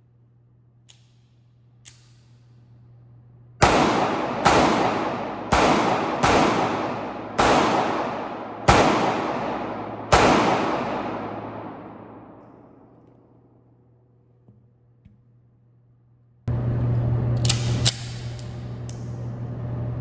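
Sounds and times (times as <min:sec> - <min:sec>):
pistol shots echoing: 0:03.6 - 0:13.0.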